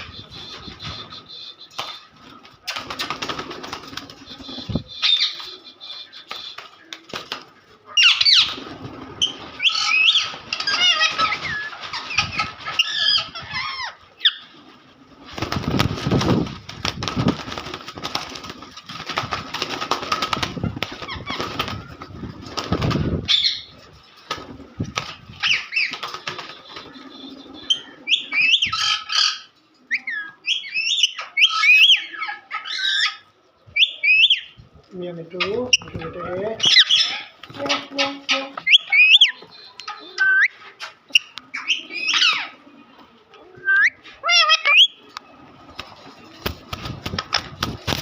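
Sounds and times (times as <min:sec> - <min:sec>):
wings flapping and rustling: 0:00.0 - 0:27.8, 0:35.4 - 0:42.5, 0:43.6 - 0:48.0
parrots chirping and squawking: 0:07.9 - 0:08.6, 0:09.2 - 0:14.5, 0:20.6 - 0:21.7, 0:27.6 - 0:33.3, 0:35.4 - 0:39.4, 0:40.2 - 0:42.6, 0:43.6 - 0:45.0.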